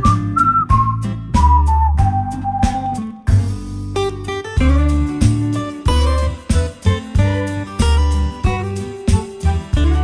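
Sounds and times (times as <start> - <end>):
whistled melody: 0.0 - 3.3
light beat: 0.0 - 3.7, 4.6 - 10.0
strummed guitar chords: 0.0 - 10.0.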